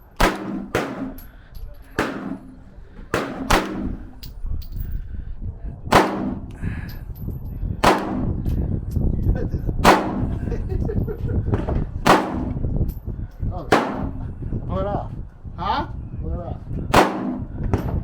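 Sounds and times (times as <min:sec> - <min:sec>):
steady low rumble: 0:00.0 - 0:18.0
gunshots: 0:00.2 - 0:01.2, 0:02.0 - 0:04.1, 0:05.9 - 0:06.5, 0:07.8 - 0:08.4, 0:09.8 - 0:10.3, 0:12.0 - 0:12.6, 0:13.7 - 0:14.2, 0:16.9 - 0:17.5.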